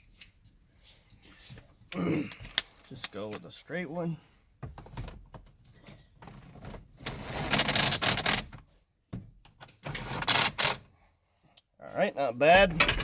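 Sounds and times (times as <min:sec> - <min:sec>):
tools and parts rattling: 0:12.6 - 0:13.0.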